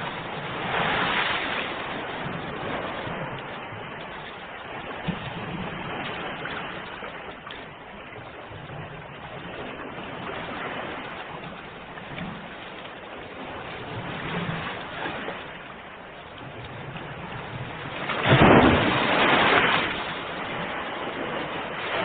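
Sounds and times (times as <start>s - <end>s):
ocean waves washing on shore: 0.0s - 22.0s
wave breaking loudly: 17.2s - 22.0s.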